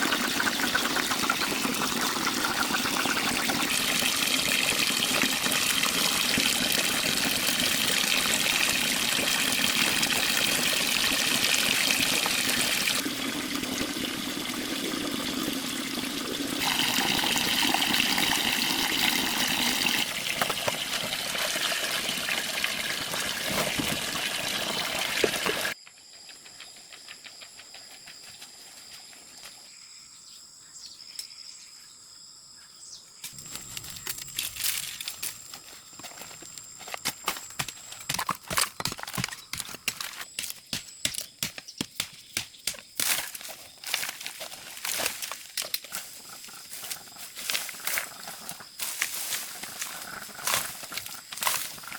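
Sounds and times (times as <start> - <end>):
water running: 0.0 - 25.8.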